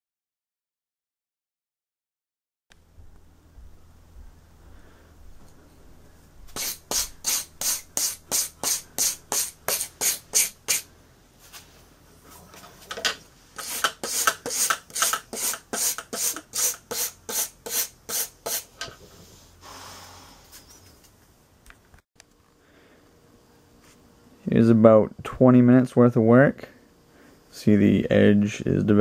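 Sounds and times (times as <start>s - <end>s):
hand file scraping steel: 6.6s - 10.9s, 13.6s - 18.9s.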